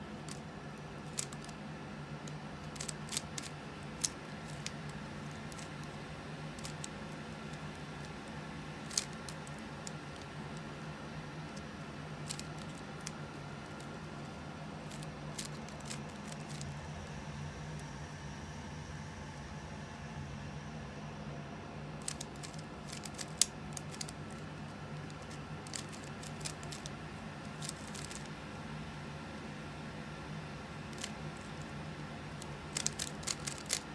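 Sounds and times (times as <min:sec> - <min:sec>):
steady low hum: 0:00.0 - 0:33.9
plastic cube clicks: 0:01.0 - 0:01.6, 0:02.3 - 0:06.0, 0:06.6 - 0:08.2, 0:08.8 - 0:10.6, 0:12.3 - 0:14.2, 0:14.9 - 0:16.8, 0:22.0 - 0:24.5, 0:25.1 - 0:28.3, 0:31.0 - 0:31.7, 0:32.4 - 0:33.9.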